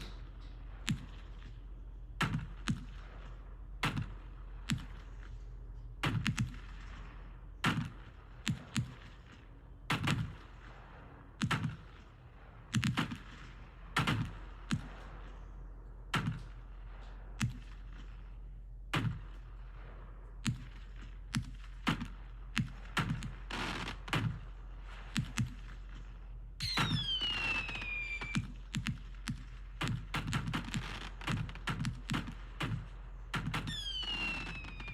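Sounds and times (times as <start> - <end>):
firework hiss and crackle: 26.6 - 28.4
firework bangs: 26.6 - 34.9.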